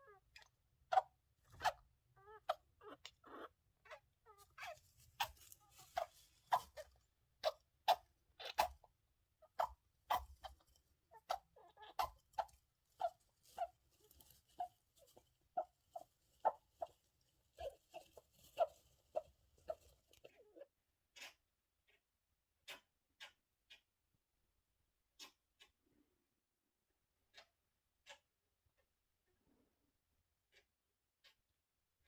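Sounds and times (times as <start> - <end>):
hamster sneezing and squeaking: 0.0 - 17.0, 17.6 - 21.4, 22.7 - 23.8.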